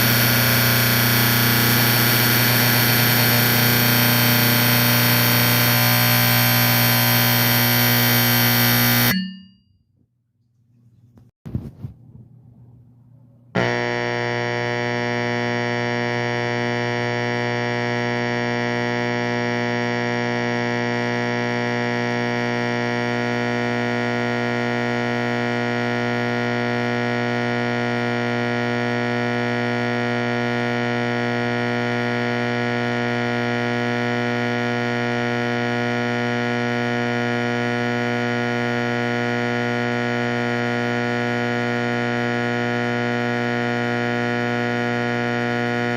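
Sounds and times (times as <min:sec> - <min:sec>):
fire alarm horn honk: 0:00.0 - 0:09.2, 0:13.6 - 0:15.7.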